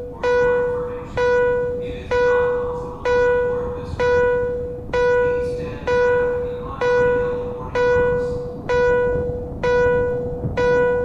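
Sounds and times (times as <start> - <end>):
electronic bell-like chime: 0.0 - 11.0.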